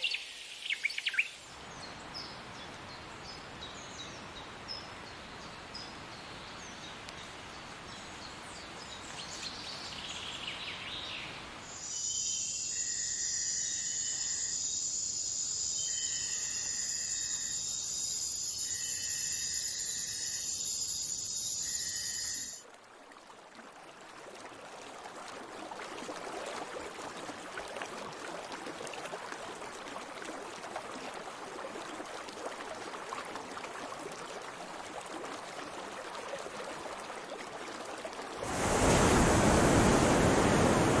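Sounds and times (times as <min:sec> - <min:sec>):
insects buzzing: 0:11.7 - 0:22.6
rushing water: 0:21.6 - 0:41.0.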